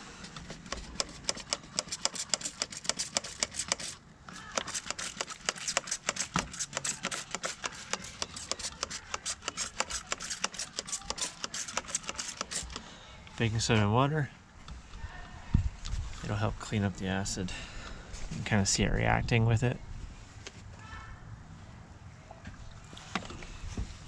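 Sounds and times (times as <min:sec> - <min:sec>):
brush scrubbing metal: 0:00.0 - 0:12.8.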